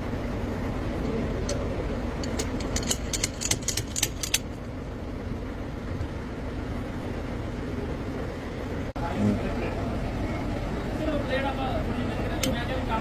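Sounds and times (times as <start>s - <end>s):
steady low rumble: 0.0s - 13.0s
sharp metallic clinks: 2.2s - 4.6s.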